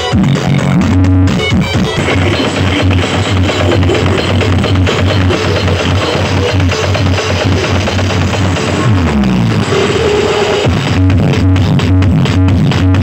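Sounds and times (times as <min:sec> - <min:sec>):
electronic dance music: 0:00.0 - 0:13.0
deep rumble: 0:02.0 - 0:12.3
falling sweep: 0:07.3 - 0:11.0.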